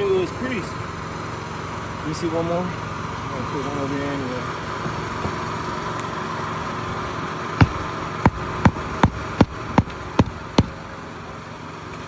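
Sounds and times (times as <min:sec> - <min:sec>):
hammer blows on nail: 0:07.6 - 0:10.8.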